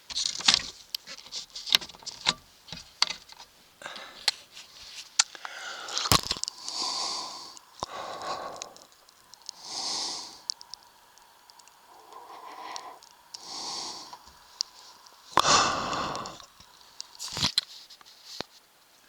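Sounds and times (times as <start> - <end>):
hands clicking and scraping on vent: 0.0 - 18.6
heavy breaths through nose: 3.7 - 17.5.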